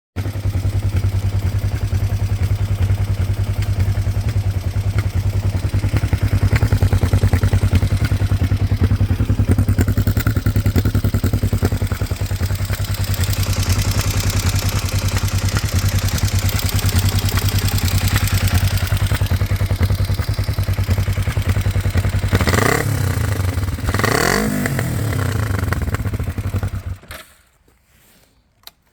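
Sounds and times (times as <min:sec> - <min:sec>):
motorcycle engine idling: 0:00.2 - 0:27.0
engine clattering: 0:00.2 - 0:27.1.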